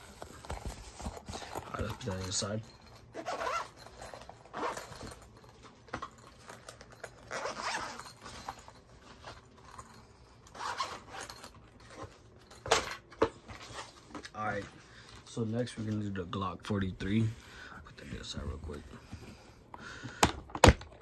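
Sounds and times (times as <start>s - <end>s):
pistol case contents rustling: 0.0s - 15.3s.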